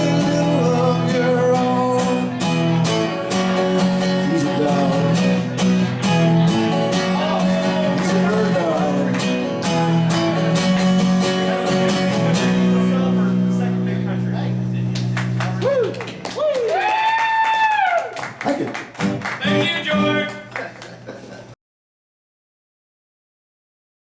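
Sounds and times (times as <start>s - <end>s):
person singing: 0.0s - 3.0s, 3.6s - 5.5s, 6.1s - 9.3s
acoustic guitar strumming: 0.0s - 15.4s, 19.0s - 20.5s.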